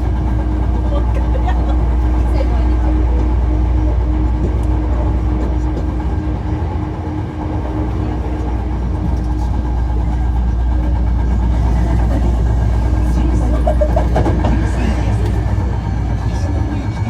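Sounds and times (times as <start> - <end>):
traction equipment hum: 0.0 - 17.0
train wheels rumbling on rail: 0.0 - 17.0.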